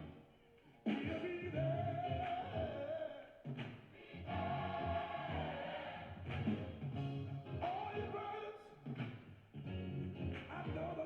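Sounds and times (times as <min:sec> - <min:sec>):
choir singing held notes: 0:00.9 - 0:06.7.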